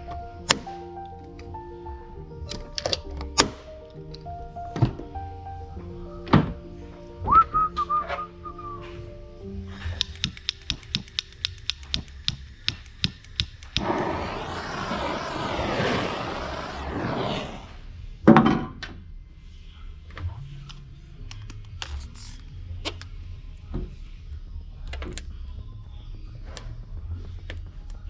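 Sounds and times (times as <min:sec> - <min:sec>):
light clicks: 0:09.9 - 0:13.8
rushing noise: 0:13.8 - 0:17.8.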